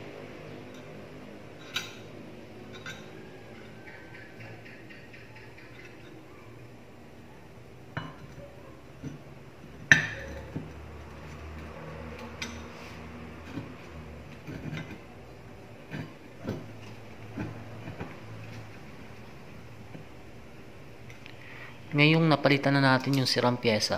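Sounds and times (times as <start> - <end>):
metal parts and tools clinking: 0.6 - 6.3, 7.9 - 19.2.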